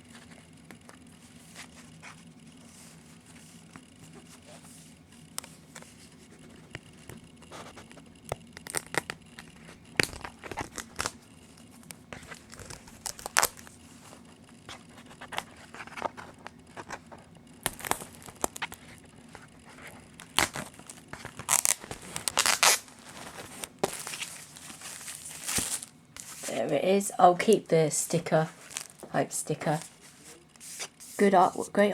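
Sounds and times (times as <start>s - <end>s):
plastic wrap crinkling and tearing: 8.6s - 11.2s, 12.2s - 13.8s, 17.6s - 19.1s, 19.7s - 26.6s, 28.6s - 31.3s.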